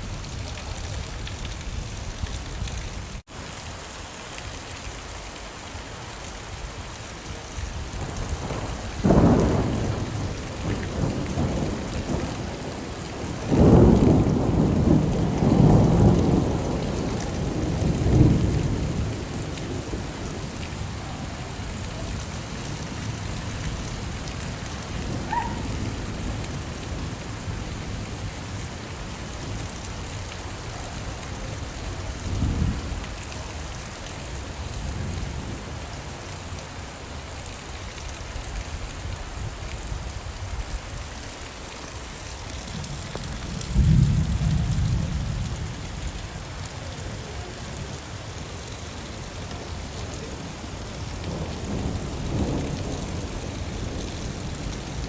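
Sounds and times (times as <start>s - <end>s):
steady rain: 0.0s - 55.0s
rolling thunder rumble: 7.8s - 33.8s, 42.7s - 47.5s, 51.0s - 55.0s
thunderclap: 8.0s - 20.2s.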